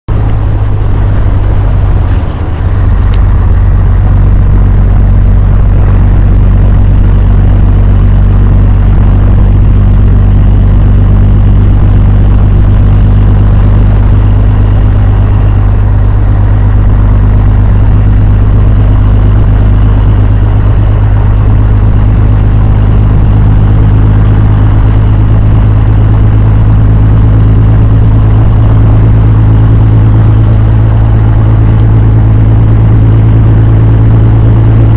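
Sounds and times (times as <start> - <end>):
vehicle rumbling on road: 0.0 - 34.9
rushing wind noise: 0.1 - 34.9.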